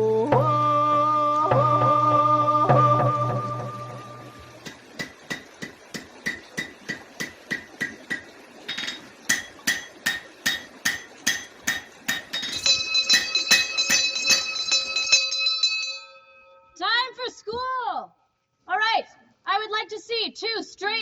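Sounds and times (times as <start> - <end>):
hammer striking metal: 4.6 - 15.4
metallic ringing: 8.7 - 16.8.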